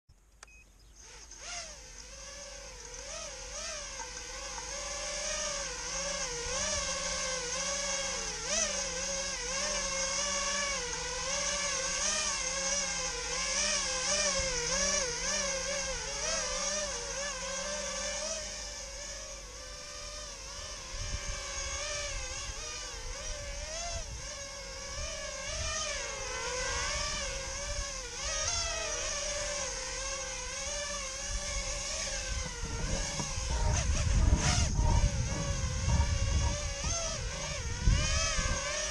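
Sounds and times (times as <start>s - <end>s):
constant high hiss: 0.1s - 38.9s
quadcopter motors whining: 0.2s - 38.9s.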